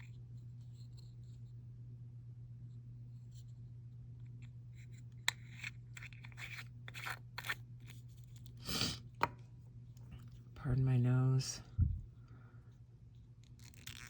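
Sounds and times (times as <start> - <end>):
steady low hum: 0.0 - 14.0
person sniffing: 8.6 - 9.0.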